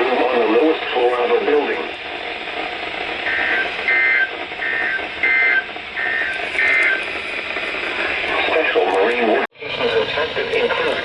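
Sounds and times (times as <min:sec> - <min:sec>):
radio hiss: 0:00.0 - 0:11.0
two-tone warbling data beeps: 0:03.3 - 0:07.0.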